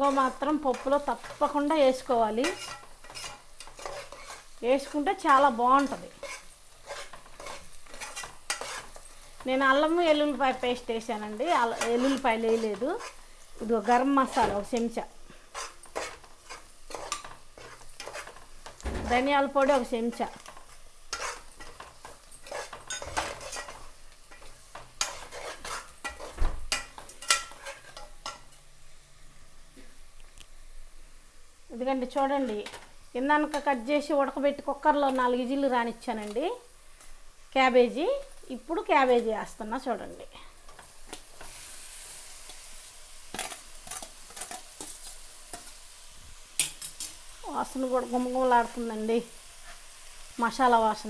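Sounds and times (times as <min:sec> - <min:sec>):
metal spoon scraping a pan: 0:00.0 - 0:28.7, 0:43.3 - 0:45.8.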